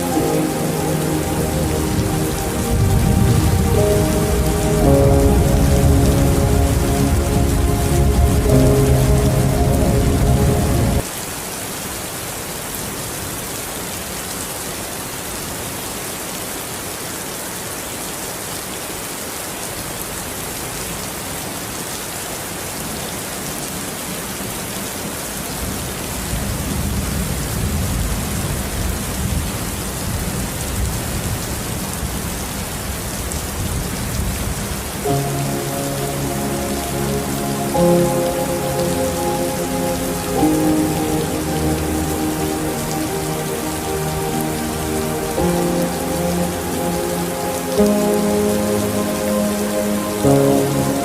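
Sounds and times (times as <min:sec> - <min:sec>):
soft sustained music chords: 0:00.0 - 0:11.1, 0:35.0 - 0:51.0
heavy rain falling: 0:00.0 - 0:51.0
low thunder rumbling: 0:00.7 - 0:11.1.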